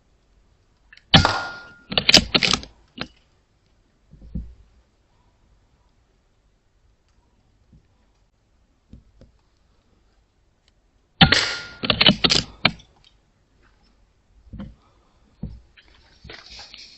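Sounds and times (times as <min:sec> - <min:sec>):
faint clicks: 0:07.0 - 0:10.8
sharp loud crack: 0:11.2 - 0:12.4.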